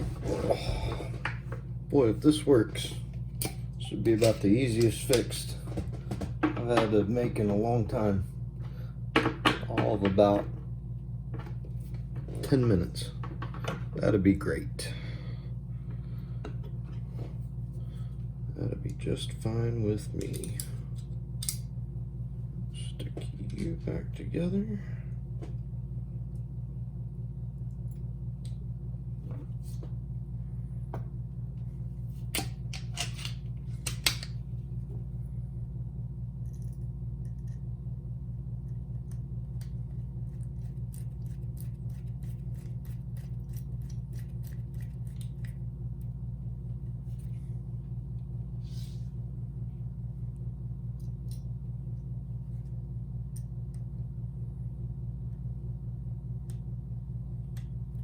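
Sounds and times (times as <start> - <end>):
low mechanical hum: 0.0 - 58.0.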